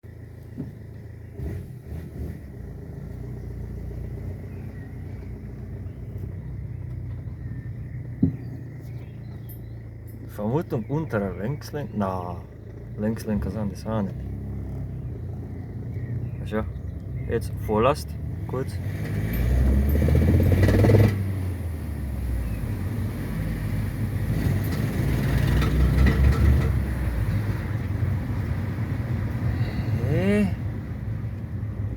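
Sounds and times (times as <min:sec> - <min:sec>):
diesel engine running: 0:00.0 - 0:31.9
knocks: 0:08.2 - 0:08.7.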